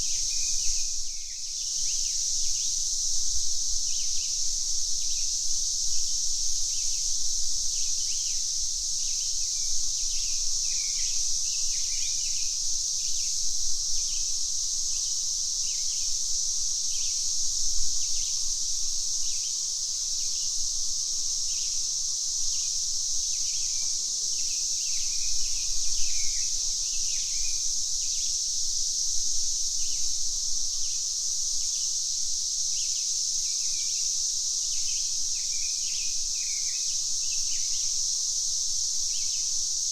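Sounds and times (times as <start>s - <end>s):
cicadas buzzing: 0.0s - 39.9s.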